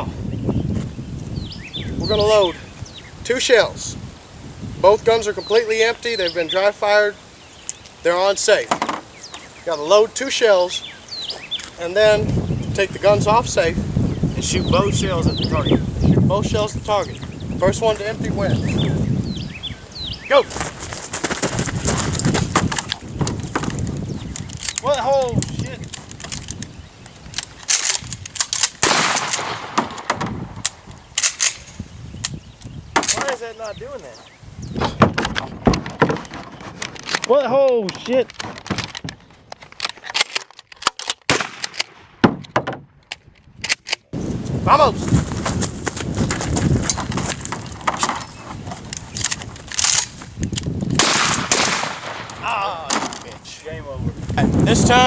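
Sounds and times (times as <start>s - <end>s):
shotgun metallic clacks: 27.3s - 31.8s, 38.3s - 44.0s
loud gunshot bang: 28.8s - 30.2s, 51.0s - 52.3s
shotgun blasts: 28.8s - 30.6s, 41.3s - 42.4s, 51.0s - 53.1s.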